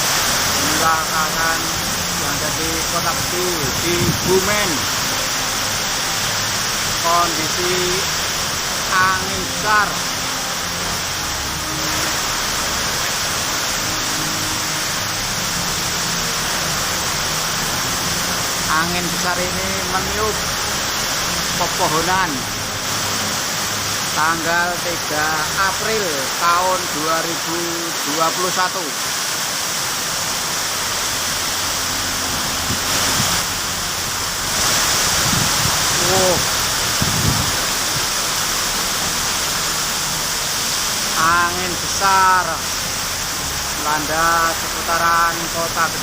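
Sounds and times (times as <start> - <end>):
heavy rain pouring: 0.0 - 46.0
strong wind: 3.4 - 4.8, 35.0 - 38.1.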